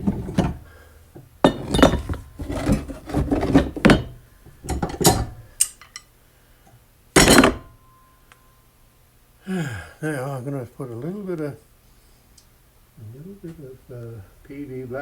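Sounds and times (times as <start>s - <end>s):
metal-on-metal scraping and grinding: 0.0s - 0.7s, 1.4s - 6.0s
loud metal clatter: 1.5s - 5.8s, 7.2s - 7.7s.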